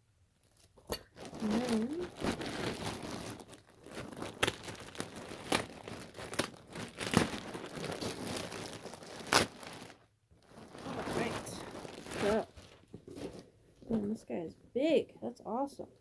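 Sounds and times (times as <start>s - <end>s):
packaging crinkling and rustling: 0.4s - 14.2s.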